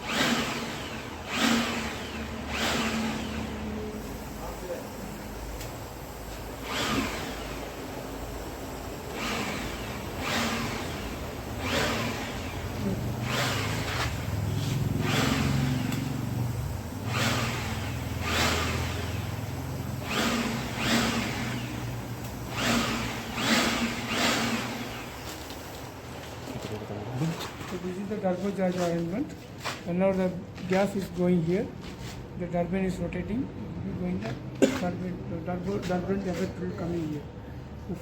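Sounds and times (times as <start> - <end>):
blower humming: 0.0 - 29.1.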